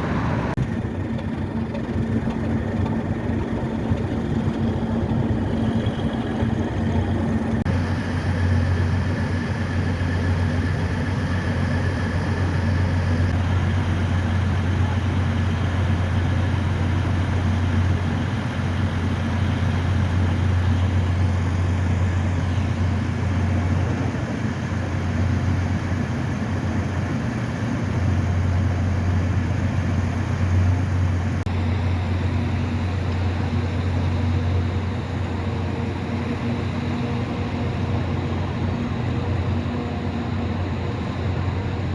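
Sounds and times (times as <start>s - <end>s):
diesel locomotive engine idling: 0.0s - 41.9s.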